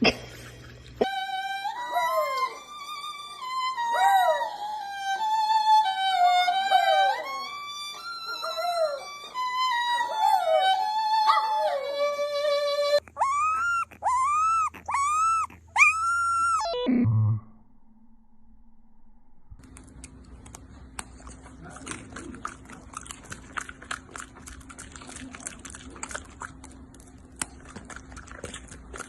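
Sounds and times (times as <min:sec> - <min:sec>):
music with sliding fiddle-like notes: 0:01.0 - 0:13.0
dog howling: 0:01.0 - 0:16.8.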